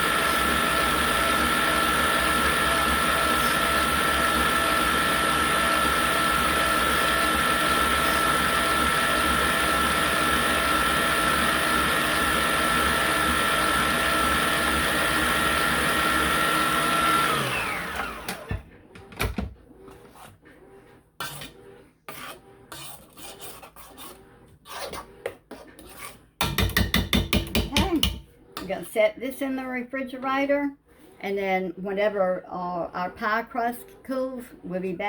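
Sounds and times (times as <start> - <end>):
electric mixer whining: 0.0 - 19.5.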